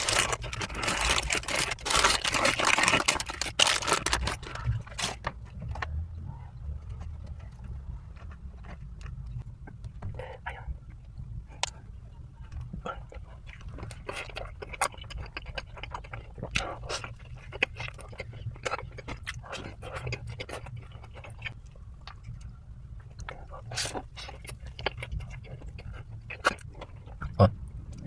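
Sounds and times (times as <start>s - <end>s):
chewing fried chicken: 0.0s - 5.2s, 12.4s - 28.0s
steady low hum: 0.0s - 28.0s.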